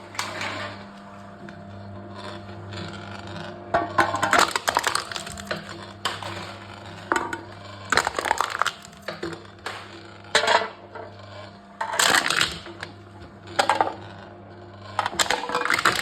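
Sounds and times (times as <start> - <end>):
machine crushing metal cans: 2.6 - 10.8, 11.8 - 14.1, 14.8 - 16.0.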